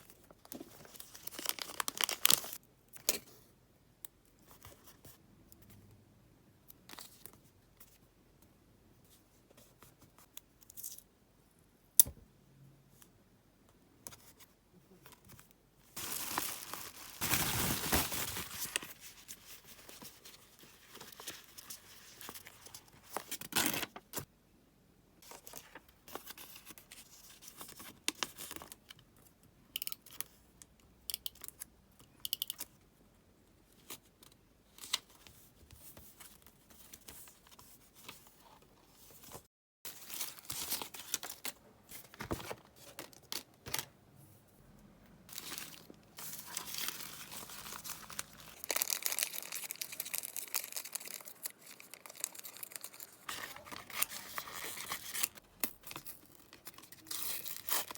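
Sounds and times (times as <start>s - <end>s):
paper rustling and crinkling: 0.1s - 2.6s, 16.0s - 24.3s, 34.8s - 43.9s, 45.3s - 57.9s.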